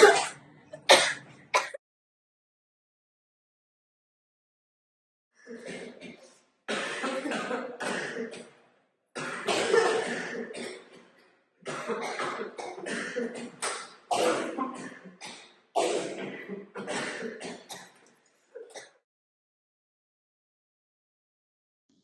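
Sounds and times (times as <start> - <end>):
person coughing: 0.0 - 1.8, 5.5 - 8.6, 9.2 - 11.1, 11.7 - 18.0.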